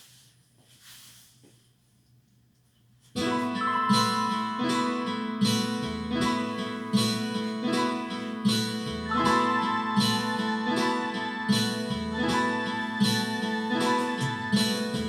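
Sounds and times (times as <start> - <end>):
instrumental music with chords: 3.2 - 15.0.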